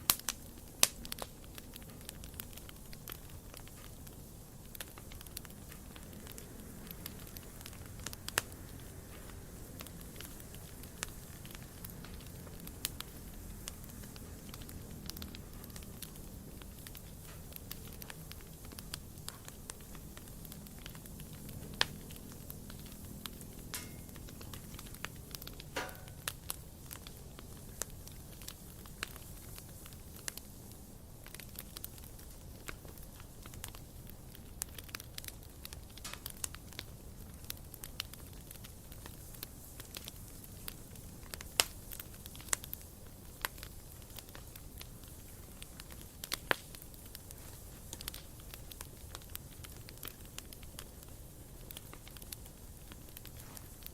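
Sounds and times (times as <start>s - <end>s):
campfire crackling and popping: 0.0s - 53.9s
low rumble of flame: 0.0s - 53.9s.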